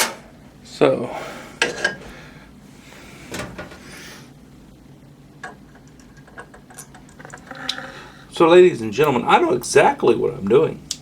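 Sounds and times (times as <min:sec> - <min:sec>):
parts scraping and rustling: 0:03.2 - 0:04.1.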